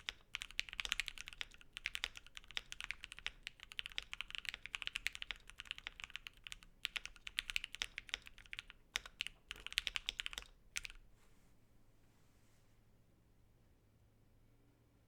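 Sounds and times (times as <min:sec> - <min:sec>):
mechanical keyboard typing: 0:00.0 - 0:11.0.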